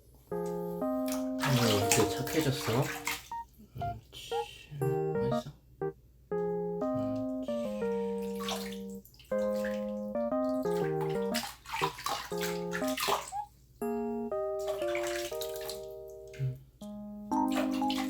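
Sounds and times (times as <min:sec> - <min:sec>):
bouncy keyboard music: 0:00.0 - 0:18.0
bath water splashing: 0:00.4 - 0:03.4, 0:08.1 - 0:13.5, 0:14.5 - 0:16.4, 0:17.4 - 0:18.0.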